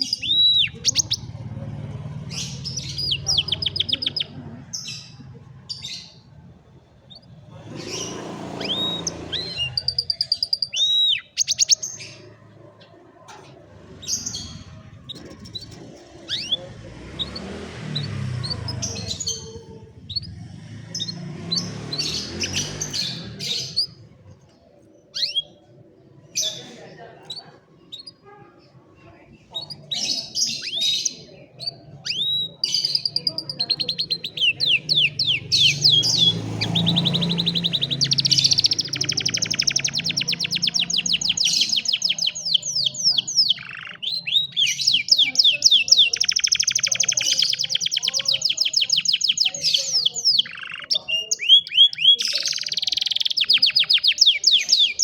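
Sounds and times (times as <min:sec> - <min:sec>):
canary singing trills and whistles: 0:00.0 - 0:55.0.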